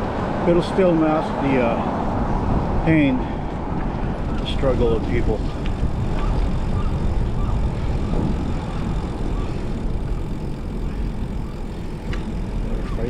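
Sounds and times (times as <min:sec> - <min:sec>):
road noise: 0:00.0 - 0:13.0
wind buffeting microphone: 0:00.0 - 0:13.0.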